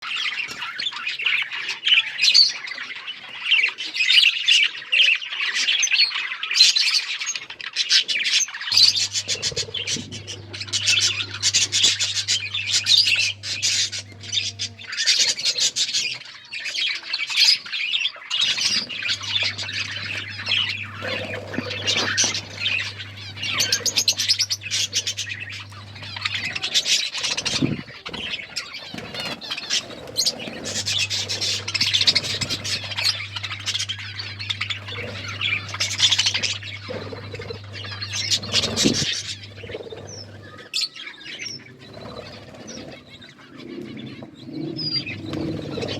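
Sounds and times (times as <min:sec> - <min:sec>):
budgies chattering: 0:00.0 - 0:45.9
low steady hum: 0:08.8 - 0:16.1, 0:18.4 - 0:45.9.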